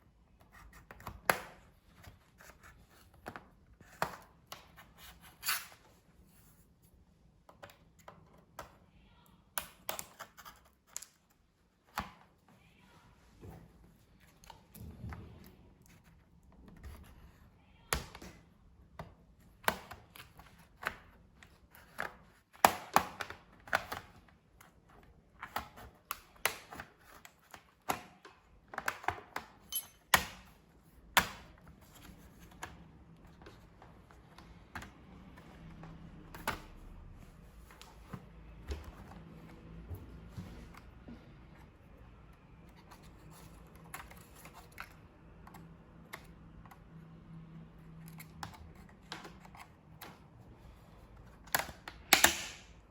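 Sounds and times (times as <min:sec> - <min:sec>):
clicks of plastic and metal parts: 0:51.2 - 0:52.8.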